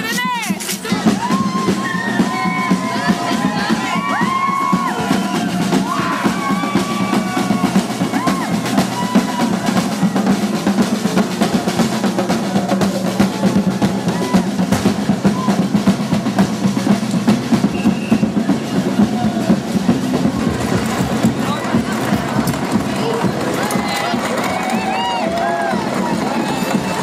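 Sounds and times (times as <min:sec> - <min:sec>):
crowd voices: 0:00.0 - 0:27.0
marching drums beating: 0:00.0 - 0:27.0.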